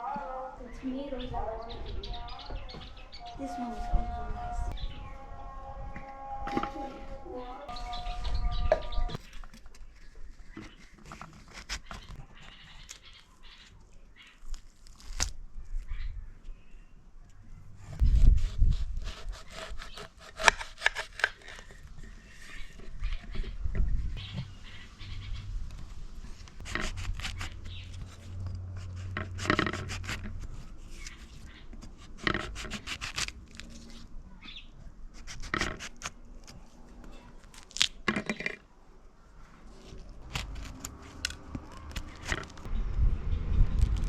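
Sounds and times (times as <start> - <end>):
fruit being cut and scraped: 10.5 - 13.3, 14.4 - 15.4, 17.8 - 23.6, 24.2 - 34.1, 35.1 - 38.1, 39.6 - 42.7.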